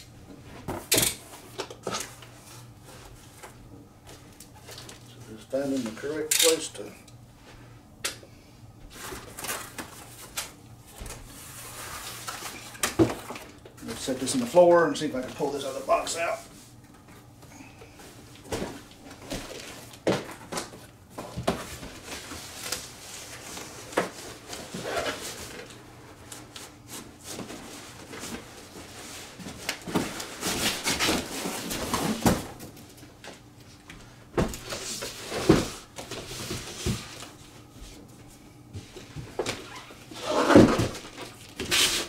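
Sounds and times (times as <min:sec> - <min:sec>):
cardboard rustling: 0:18.4 - 0:32.8
cardboard scraping: 0:39.6 - 0:42.0.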